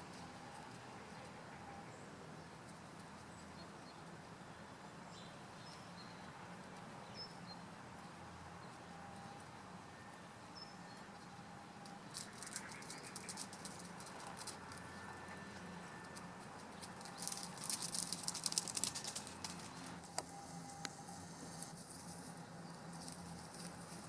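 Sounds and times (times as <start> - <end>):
puppies scampering and scuffling: 11.8 - 24.0.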